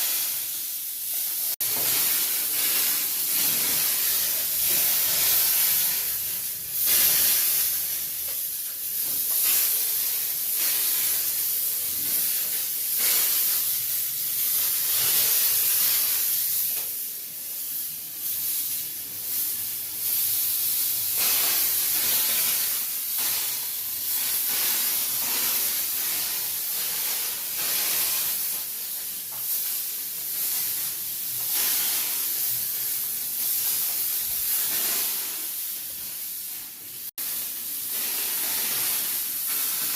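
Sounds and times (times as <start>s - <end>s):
sprayer hissing: 0.0s - 17.0s, 17.6s - 36.6s, 37.2s - 39.9s.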